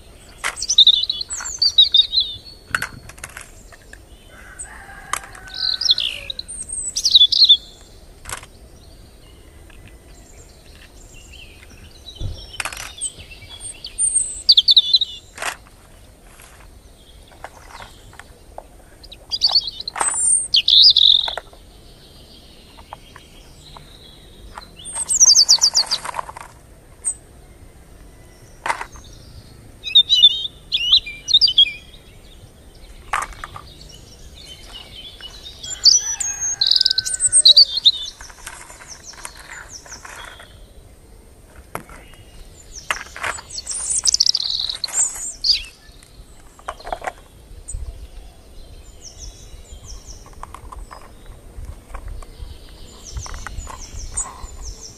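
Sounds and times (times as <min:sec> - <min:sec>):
small birds chirping: 0:00.0 - 0:54.9
rustling: 0:15.2 - 0:20.3, 0:24.5 - 0:27.1, 0:32.8 - 0:40.8, 0:41.4 - 0:47.4.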